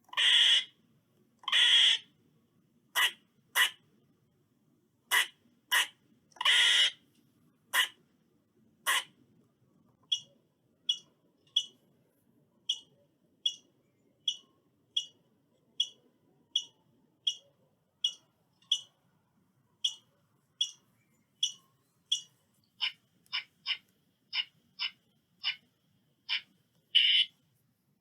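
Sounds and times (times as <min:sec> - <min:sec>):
squirrel chirping: 0:12.7 - 0:15.2, 0:15.8 - 0:19.0, 0:19.8 - 0:25.7, 0:26.3 - 0:27.3.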